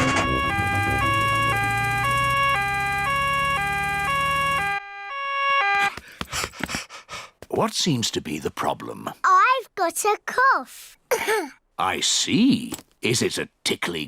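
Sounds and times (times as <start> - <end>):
low engine hum: 0.0 - 4.5
cartoon two-tone siren: 0.0 - 6.0.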